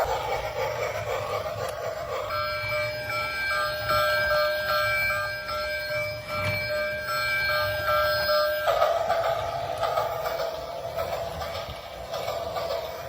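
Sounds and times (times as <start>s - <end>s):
whirring noise: 0.0s - 13.0s.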